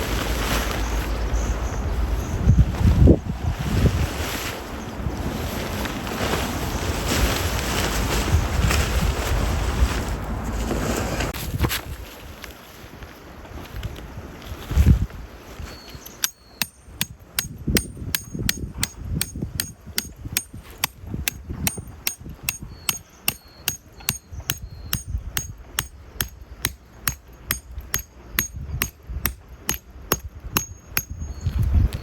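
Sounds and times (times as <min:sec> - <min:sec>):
hammer striking tent peg: 0:16.2 - 0:31.2.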